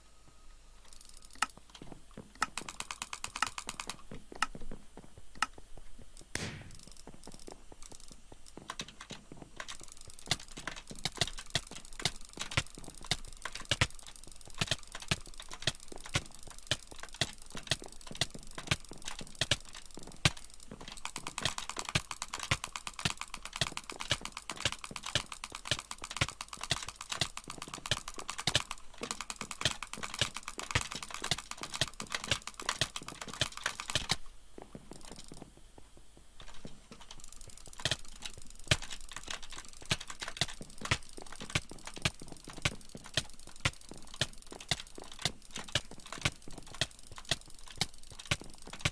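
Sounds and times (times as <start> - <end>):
keyboard typing: 8.6 - 34.2, 36.4 - 48.9.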